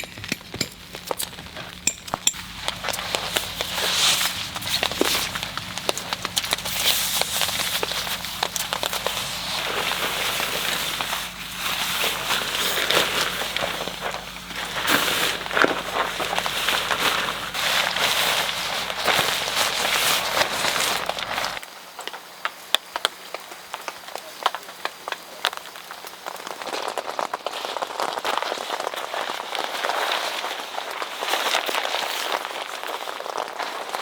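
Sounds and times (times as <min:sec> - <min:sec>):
light rain pattering: 0:02.5 - 0:34.0.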